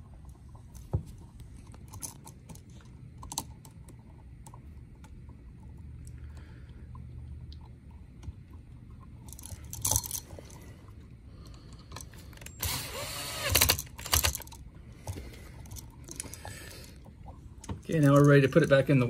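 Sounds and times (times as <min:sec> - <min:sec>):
screwdriver scraping: 0:12.4 - 0:14.4
clicks and rattles of outlet wiring: 0:13.4 - 0:16.3.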